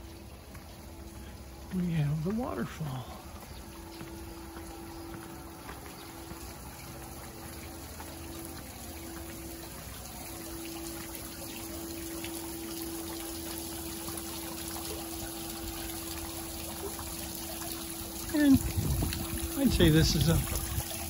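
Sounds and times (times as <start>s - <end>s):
steady hum: 0.0s - 21.0s
waterfall rushing and trickling: 0.0s - 21.0s.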